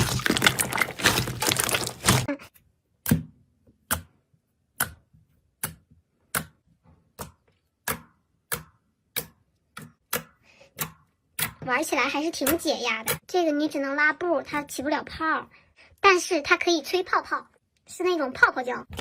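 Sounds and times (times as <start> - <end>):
slime crackling and popping: 0.0 - 2.3.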